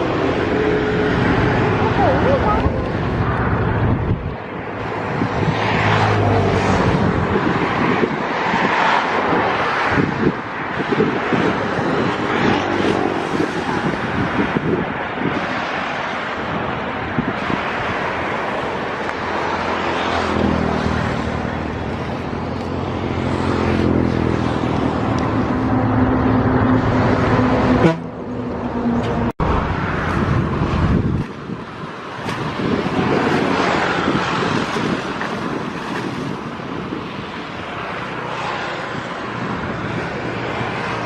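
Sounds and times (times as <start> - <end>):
outdoor rush of noise: 0.0 - 41.0
wind buffeting microphone: 0.0 - 41.0.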